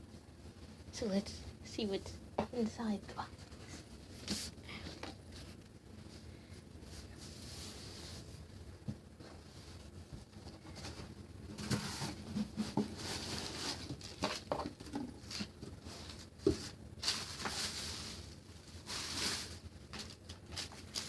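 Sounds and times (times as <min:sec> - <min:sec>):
packaging rustling and crinkling: 0:09.6 - 0:21.0.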